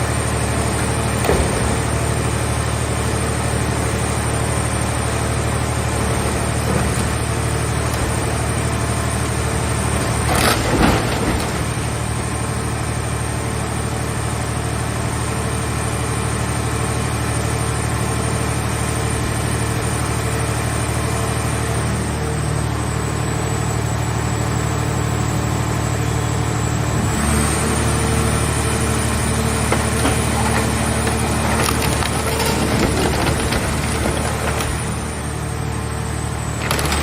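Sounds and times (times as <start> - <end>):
hydraulic power unit engine: 0.0 - 37.0
car shell crackling and crunching: 29.6 - 34.9.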